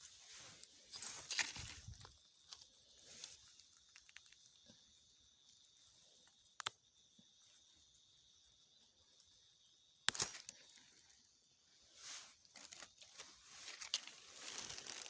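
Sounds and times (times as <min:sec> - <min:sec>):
dry vegetation rustling: 0:00.0 - 0:04.4, 0:12.0 - 0:15.0
faint insect drone: 0:00.0 - 0:15.0.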